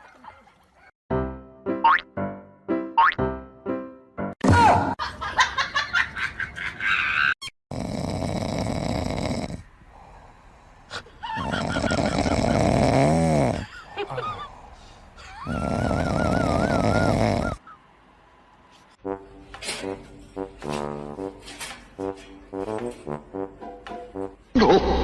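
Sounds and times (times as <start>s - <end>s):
pet snoring: 7.7s - 10.3s, 11.4s - 13.7s, 15.4s - 17.6s.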